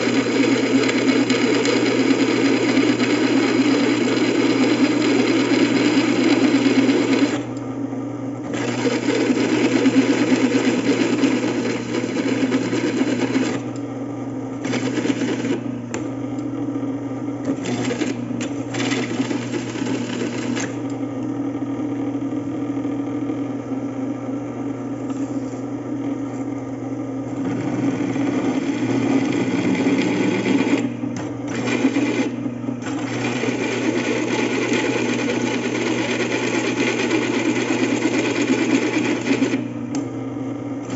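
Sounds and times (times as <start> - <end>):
drill press drilling metal: 14.6 - 16.5, 17.4 - 21.0, 27.4 - 40.0.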